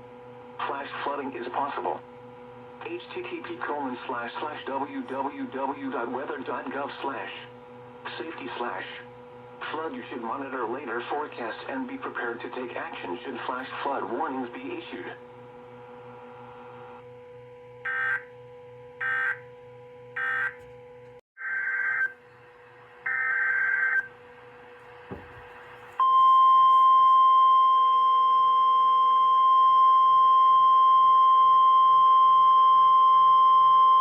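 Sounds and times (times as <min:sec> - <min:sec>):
steady warning alarm tone: 0:15.9 - 0:22.2, 0:22.9 - 0:34.0.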